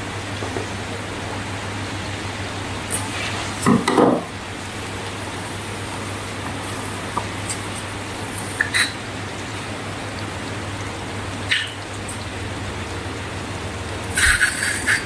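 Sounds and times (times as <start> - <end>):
steady hiss: 1.8 - 11.3.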